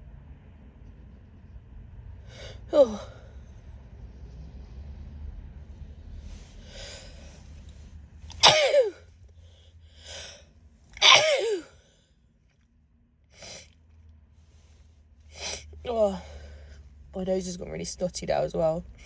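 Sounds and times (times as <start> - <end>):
sharp in-breath: 6.5 - 7.3, 9.4 - 10.4
woman sneezing: 8.3 - 9.0, 11.0 - 11.7.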